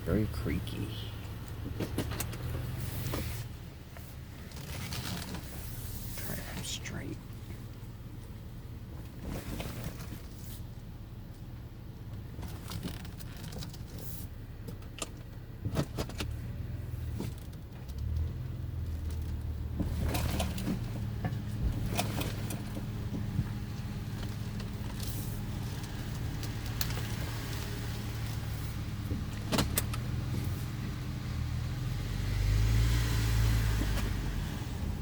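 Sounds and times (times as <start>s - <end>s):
car engine running: 0.0s - 32.1s, 33.6s - 35.0s
suspension creaks and clicks: 1.4s - 6.9s, 12.1s - 31.8s.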